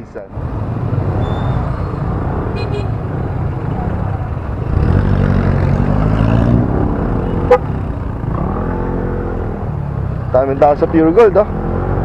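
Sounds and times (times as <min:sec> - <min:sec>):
motorcycle engine accelerating: 0:04.6 - 0:10.4.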